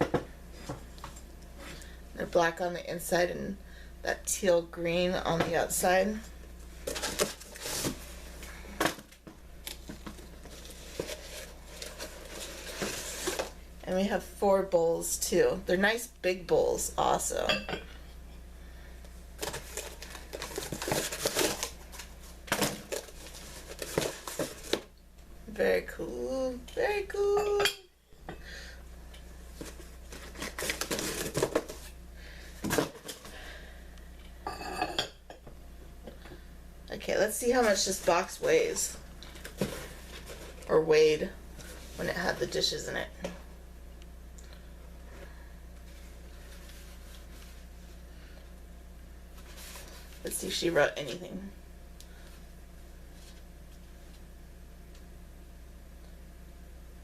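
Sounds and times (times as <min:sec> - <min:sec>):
packing rustling: 0:19.4 - 0:24.8.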